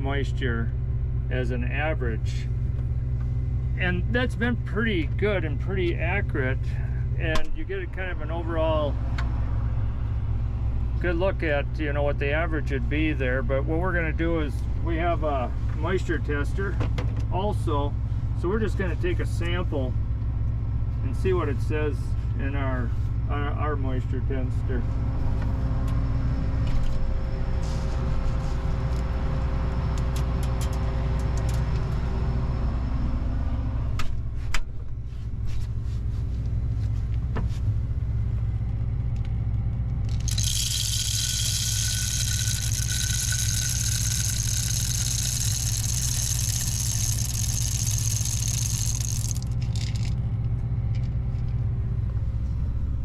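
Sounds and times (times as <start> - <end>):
vehicle engine idling: 0.0 - 53.0
high hissing rattle: 40.1 - 50.1.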